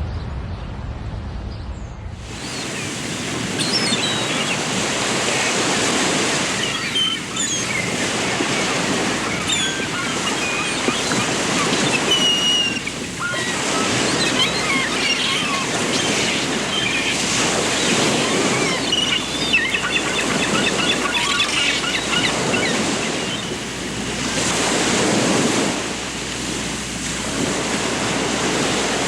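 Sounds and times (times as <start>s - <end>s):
surf washing: 2.2s - 29.0s
small birds chirping: 2.3s - 23.6s.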